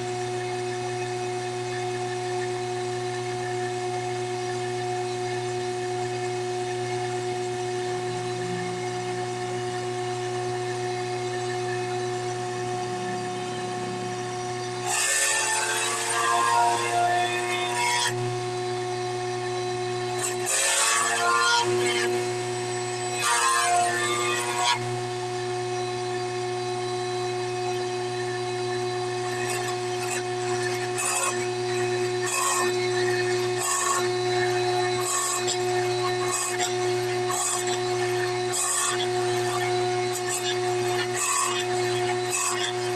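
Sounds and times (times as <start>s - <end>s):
drill bit cutting wood: 6.8s - 42.9s
electric drill humming: 18.3s - 24.0s, 24.8s - 42.9s
cutter biting into wood: 28.9s - 42.9s.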